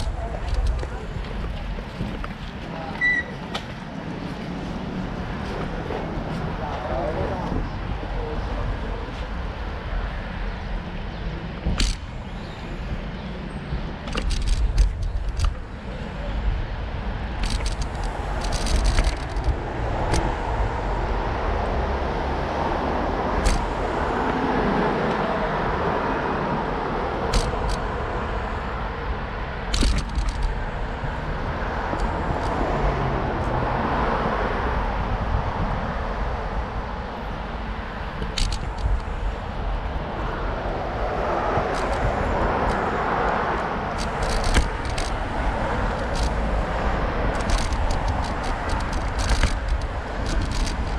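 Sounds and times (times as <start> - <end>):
traffic rumble: 0.0 - 50.9
sharp clicks and knocks: 11.6 - 12.1, 14.0 - 15.7, 17.4 - 20.4, 23.4 - 23.8, 27.3 - 27.9, 29.7 - 30.6, 38.2 - 39.3, 41.5 - 50.9.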